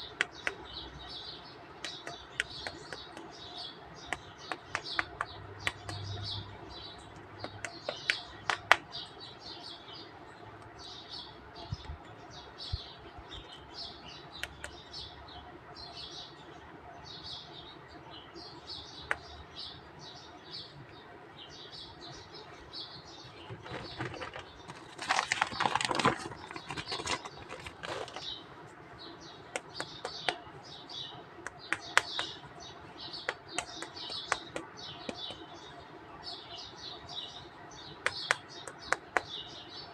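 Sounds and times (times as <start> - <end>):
birds chirping: 0.0 - 39.9
plastic toy figures clicking: 1.8 - 3.4, 4.1 - 6.3, 7.1 - 9.0, 23.5 - 28.3, 29.5 - 30.5, 31.4 - 32.5, 33.1 - 35.4, 38.0 - 39.4.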